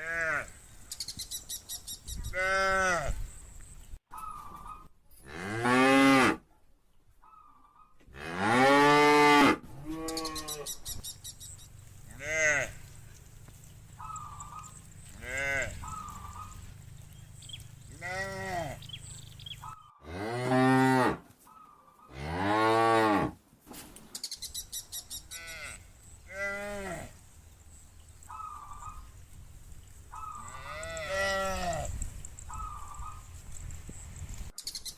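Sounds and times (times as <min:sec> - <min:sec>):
cows mooing: 0:11.8 - 0:21.2, 0:25.3 - 0:27.2, 0:30.3 - 0:32.0.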